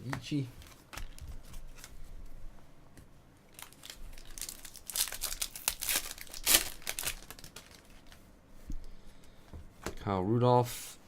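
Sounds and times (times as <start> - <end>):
foil wrapper crinkling: 3.5 - 8.2.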